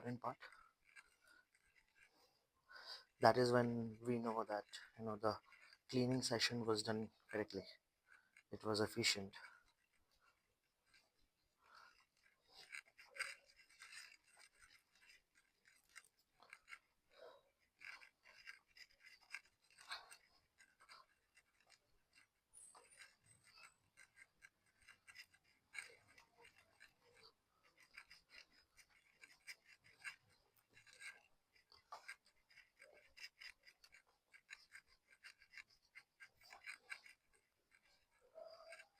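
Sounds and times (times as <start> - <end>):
cloth rubbing on chain: 9.0 - 38.9.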